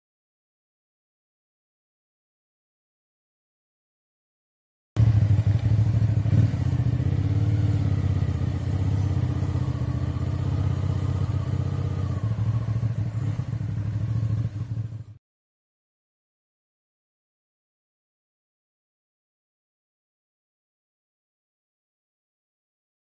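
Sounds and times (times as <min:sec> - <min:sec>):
motorcycle engine running: 0:05.0 - 0:15.2.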